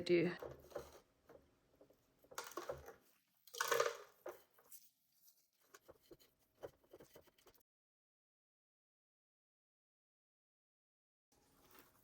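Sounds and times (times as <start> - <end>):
crunching and rustling of potting mix: 11.4 - 12.0.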